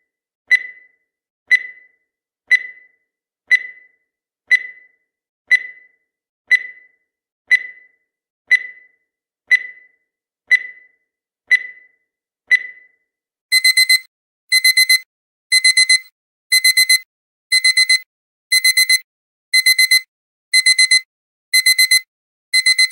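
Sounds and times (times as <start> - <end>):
digital alarm clock beeping: 0.5 - 19.0, 19.6 - 22.9
short high countdown beeps: 13.5 - 19.0, 19.6 - 22.9.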